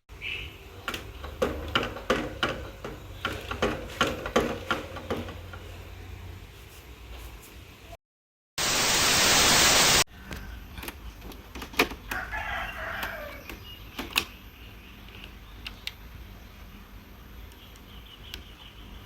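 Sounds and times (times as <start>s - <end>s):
loud hiss: 8.6s - 10.1s
rooster crowing: 12.1s - 13.5s.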